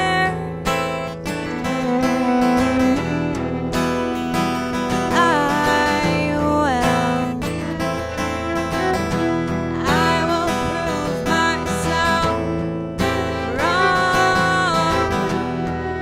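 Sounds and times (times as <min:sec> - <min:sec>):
strummed acoustic guitar: 0:00.0 - 0:16.0.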